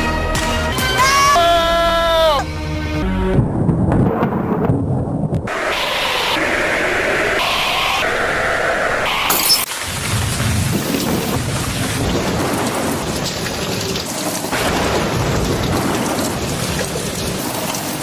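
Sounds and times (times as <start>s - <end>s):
low rumbling thunder: 3.3s - 5.5s, 9.8s - 18.0s
heavy rain: 5.5s - 18.0s.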